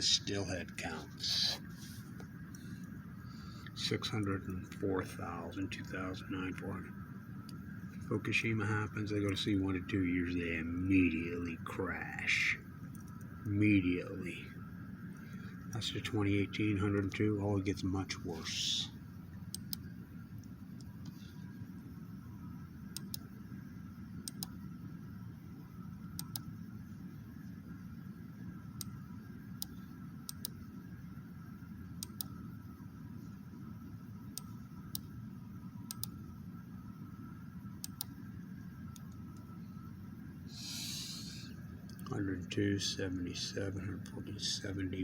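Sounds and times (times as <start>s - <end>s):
steady low hum: 0.0s - 45.0s
short hiss: 40.5s - 41.5s.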